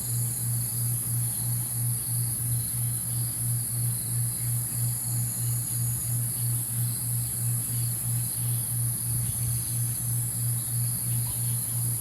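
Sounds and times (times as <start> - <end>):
insects chirring: 0.0 - 12.0.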